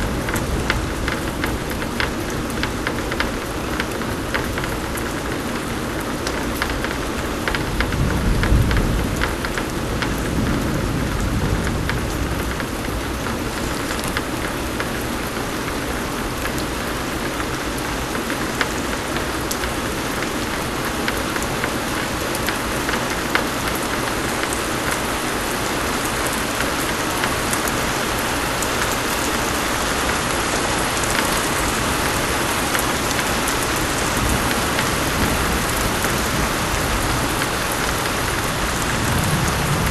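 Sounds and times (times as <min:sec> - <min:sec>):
rain falling steadily: 0:00.0 - 0:39.9
thunder rumble: 0:31.4 - 0:39.9.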